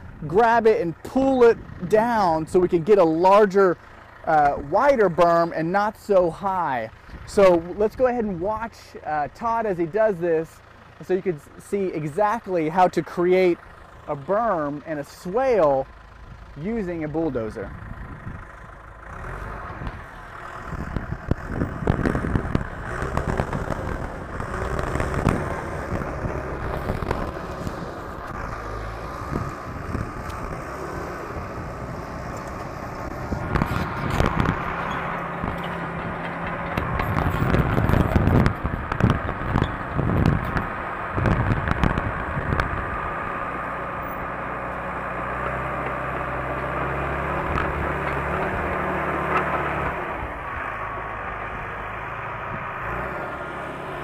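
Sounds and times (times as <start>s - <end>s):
bulldozer diesel engine: 0.0s - 54.0s
clattering and scraping soil: 32.3s - 40.7s, 45.4s - 50.0s.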